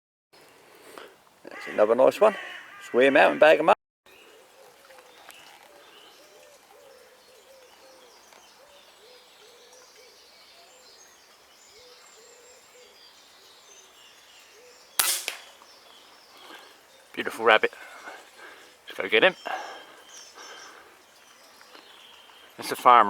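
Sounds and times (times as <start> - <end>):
faint songbirds: 0.4 - 23.0
bird cooing: 4.2 - 11.0, 11.7 - 13.1
airgun shot: 15.0 - 15.6.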